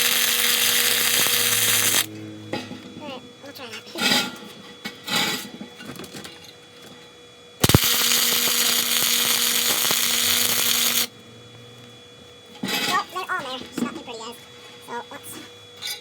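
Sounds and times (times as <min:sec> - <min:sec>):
welder arc hissing: 0:00.0 - 0:02.1, 0:07.6 - 0:11.1.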